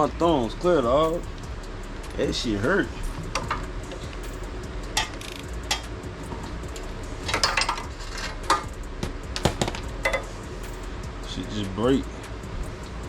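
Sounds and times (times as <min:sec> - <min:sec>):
hand tools clinking on metal: 0:05.0 - 0:05.9, 0:06.8 - 0:08.7.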